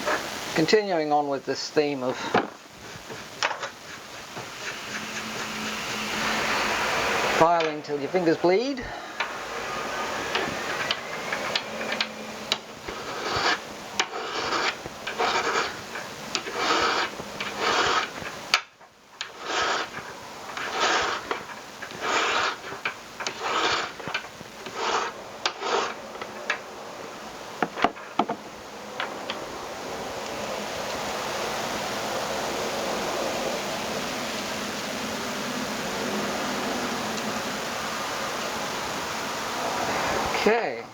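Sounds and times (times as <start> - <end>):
hand file rasping on metal: 2.2 - 18.6, 19.2 - 26.0.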